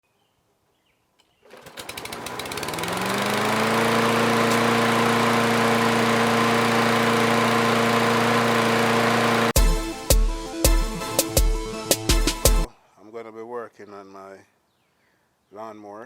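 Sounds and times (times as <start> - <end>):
lawn mower engine starting and running: 1.4 - 9.7.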